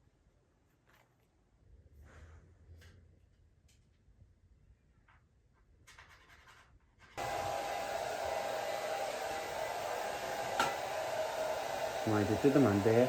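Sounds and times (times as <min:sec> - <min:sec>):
hair dryer blowing: 0:07.2 - 0:13.0.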